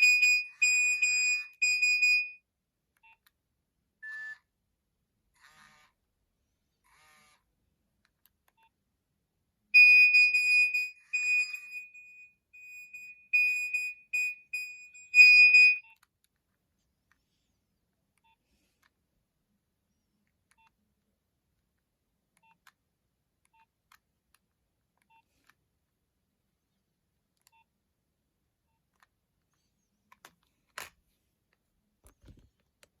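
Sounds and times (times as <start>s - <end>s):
mobile phone high beeps: 0.0s - 2.4s, 9.8s - 16.0s.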